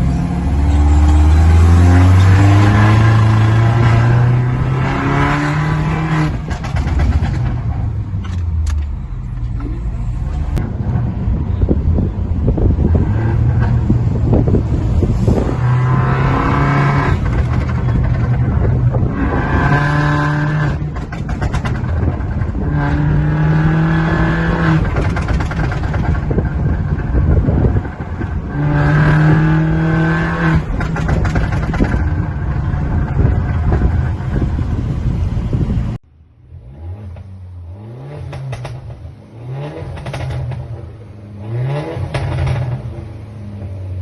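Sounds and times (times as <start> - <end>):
car engine accelerating: 0.0 - 44.0
exhaust pops and crackles: 6.2 - 9.8, 16.9 - 19.4, 20.4 - 23.2, 24.5 - 28.6, 30.4 - 35.1, 38.3 - 39.0, 39.8 - 41.0, 42.0 - 42.9.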